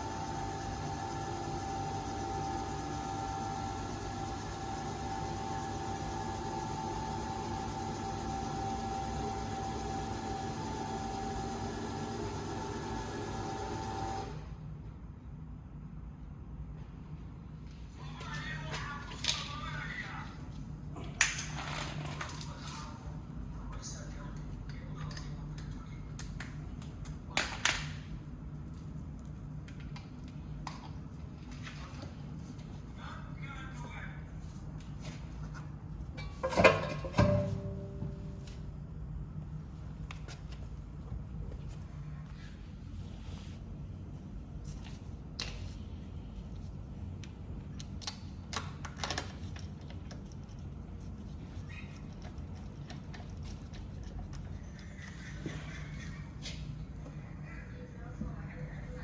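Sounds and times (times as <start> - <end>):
steady low hum: 0.0 - 18.2, 19.0 - 59.0
metal tools clinking: 21.4 - 23.1.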